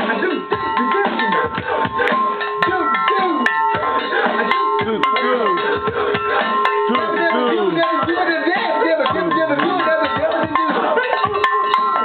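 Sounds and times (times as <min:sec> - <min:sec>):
steady held tones: 0:00.0 - 0:12.0.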